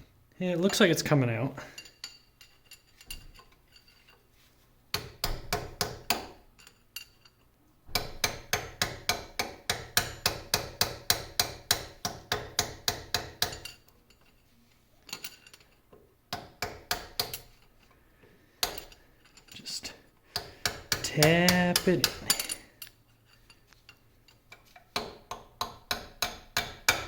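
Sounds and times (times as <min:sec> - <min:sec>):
hammer tapping metal punch: 0:04.9 - 0:06.4, 0:07.9 - 0:13.9, 0:16.3 - 0:17.5, 0:18.6 - 0:19.0, 0:20.3 - 0:22.7, 0:24.5 - 0:27.0.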